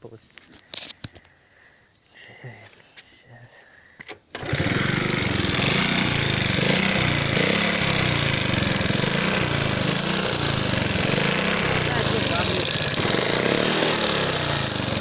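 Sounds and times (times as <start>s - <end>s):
moped engine rattling clatter: 4.4s - 15.0s.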